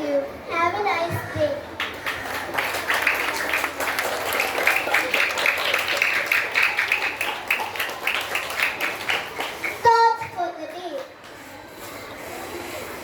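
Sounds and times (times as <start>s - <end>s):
children applauding: 1.8s - 9.8s.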